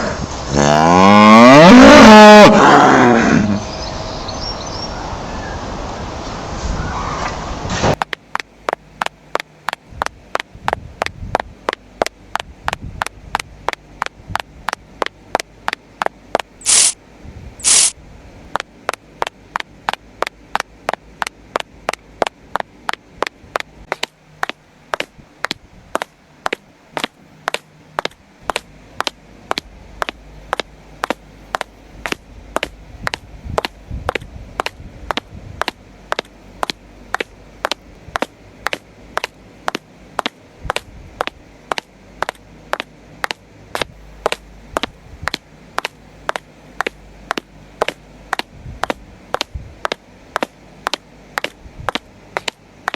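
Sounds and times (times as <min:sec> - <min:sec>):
loud hissing bursts: 0:16.6 - 0:17.0, 0:17.6 - 0:18.0.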